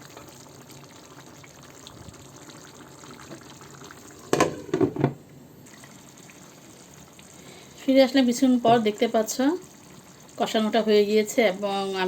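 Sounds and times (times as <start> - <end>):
pot simmering with faint bubbling: 0.0 - 12.0
pot lid clattering: 4.2 - 5.2.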